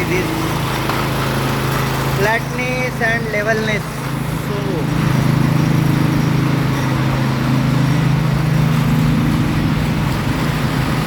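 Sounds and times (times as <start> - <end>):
power trowel engine droning: 0.0 - 11.0.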